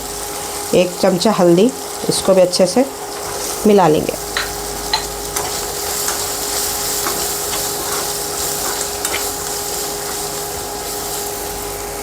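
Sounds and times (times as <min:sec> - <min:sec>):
food sizzling in hot oil: 0:00.0 - 0:12.0
spoon scraping and tapping pan: 0:04.3 - 0:10.3.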